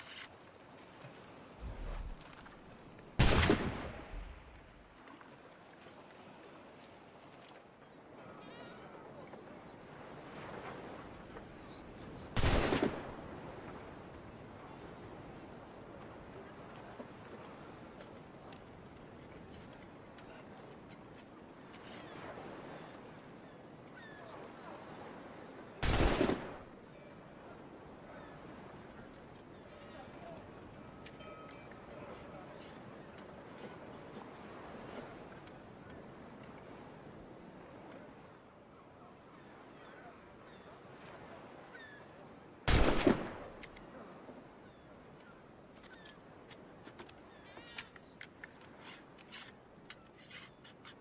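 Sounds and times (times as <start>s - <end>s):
musket shot: 3.2s - 4.3s, 42.7s - 43.6s
faint clicks: 45.2s - 51.0s.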